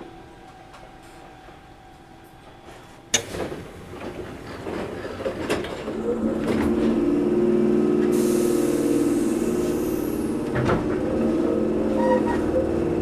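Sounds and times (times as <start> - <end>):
air hiss: 8.2 - 10.3.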